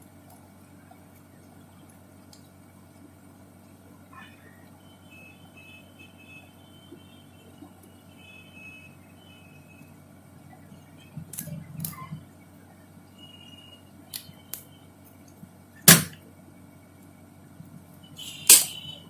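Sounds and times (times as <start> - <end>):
desoldering pump snapping: 15.8 - 16.2.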